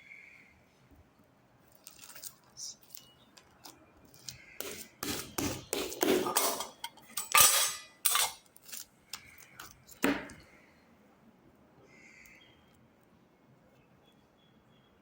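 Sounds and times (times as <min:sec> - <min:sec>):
dishes and utensils clattering: 0:04.6 - 0:08.4.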